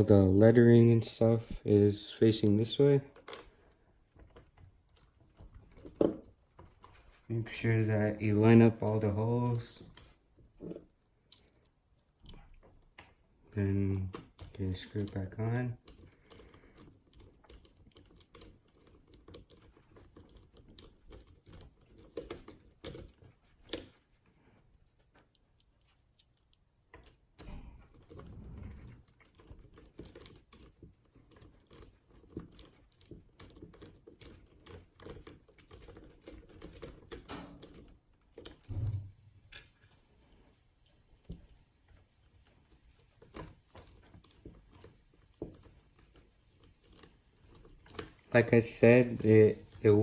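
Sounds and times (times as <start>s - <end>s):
low handling thumps: 38.7s - 39.4s.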